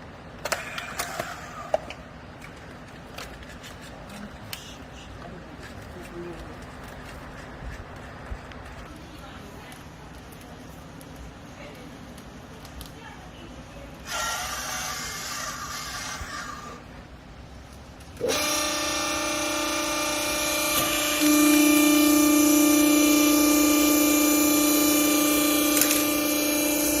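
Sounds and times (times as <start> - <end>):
electric motor and pump whining: 13.9 - 17.0, 17.9 - 27.0.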